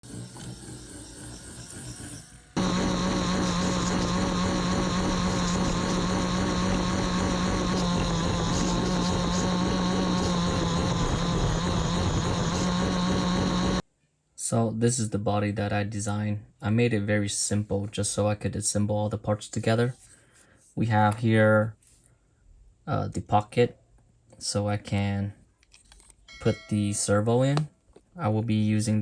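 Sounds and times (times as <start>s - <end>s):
small electric motor whining: 0.0s - 13.8s.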